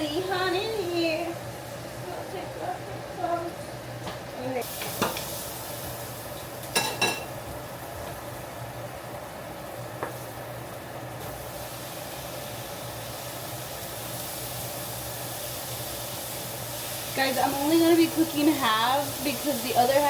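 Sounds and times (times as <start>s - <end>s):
food sizzling in a pot: 0.0s - 20.0s
utensil clinking on pot: 6.7s - 7.3s.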